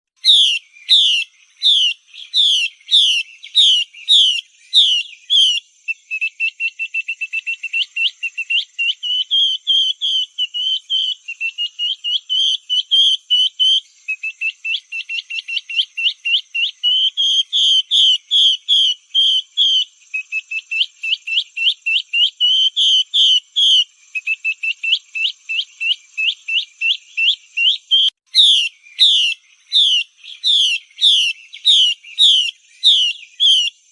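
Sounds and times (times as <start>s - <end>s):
bird whistled call notes: 0.2s - 33.9s.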